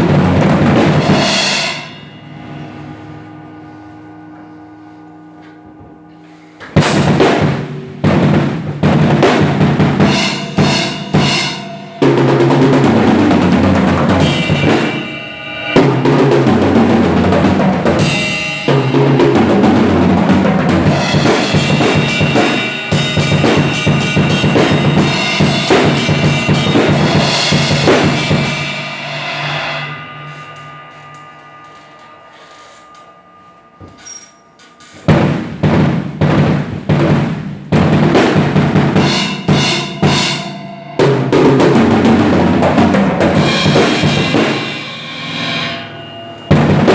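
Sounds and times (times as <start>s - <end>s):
drums played hard: 0.0s - 2.8s, 6.7s - 32.9s, 34.9s - 46.9s.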